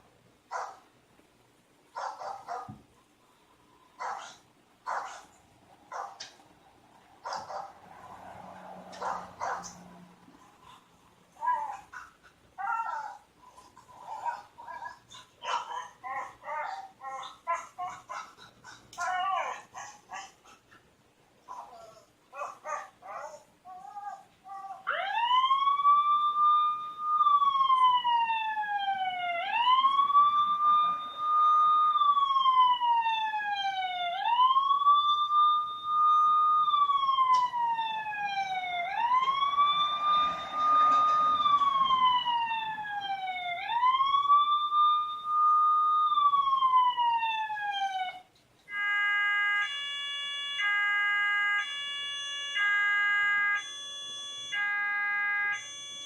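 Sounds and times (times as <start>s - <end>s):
wailing siren: 7.2s - 10.8s, 23.8s - 56.0s
two-tone electronic alarm: 25.2s - 48.0s, 48.7s - 56.0s.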